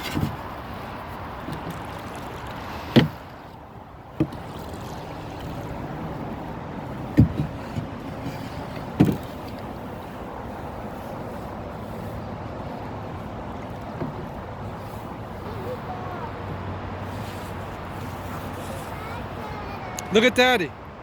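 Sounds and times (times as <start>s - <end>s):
water washing around canoe: 0.0s - 20.6s
knocks against boat: 2.9s - 3.3s, 4.2s - 4.5s, 7.0s - 9.6s.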